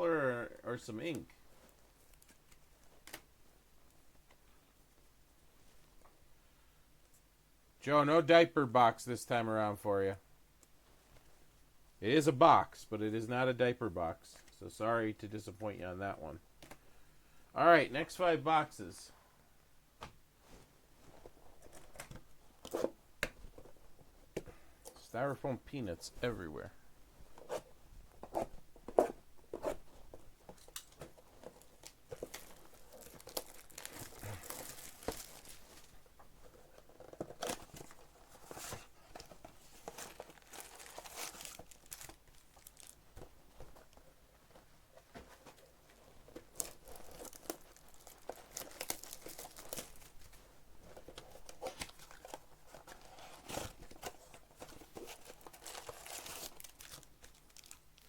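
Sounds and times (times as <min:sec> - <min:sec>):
packing peanuts rustling: 0:31.5 - 0:35.9, 0:39.7 - 0:43.2, 0:46.5 - 0:50.4, 0:51.2 - 0:58.0.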